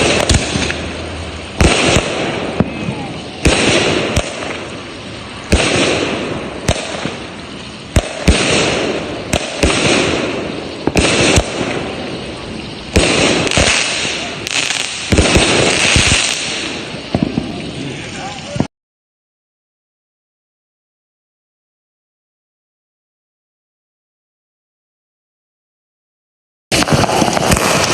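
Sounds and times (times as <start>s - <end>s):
fireworks bangs: 0.0s - 18.7s, 26.7s - 27.9s
fireworks crackle: 0.0s - 18.7s, 26.7s - 27.9s.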